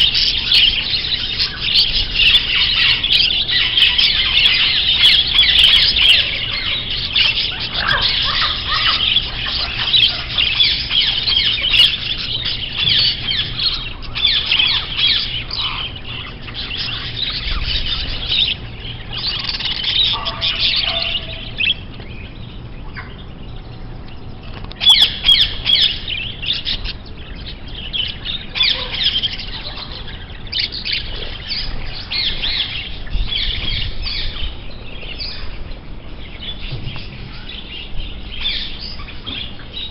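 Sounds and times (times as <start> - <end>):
birds chirping and squawking: 0.0 - 39.9.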